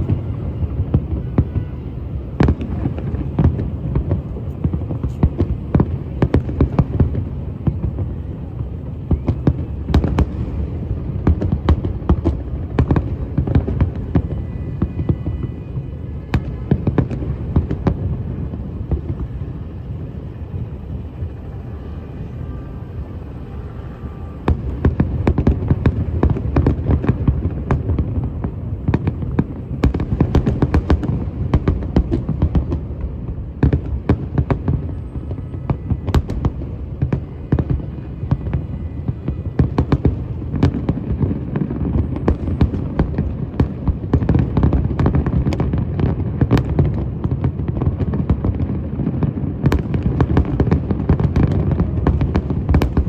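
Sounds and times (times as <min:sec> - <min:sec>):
fireworks bangs and crackles: 0:00.0 - 0:53.0.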